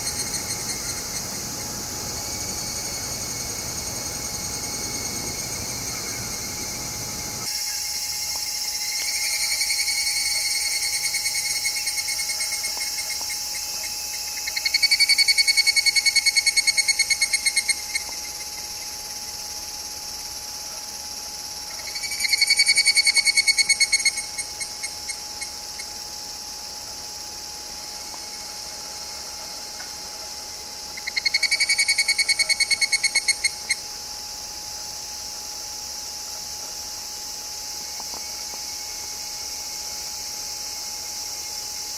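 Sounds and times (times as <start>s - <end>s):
faint steady tone: 0.0s - 12.8s
cicadas calling: 0.0s - 41.9s.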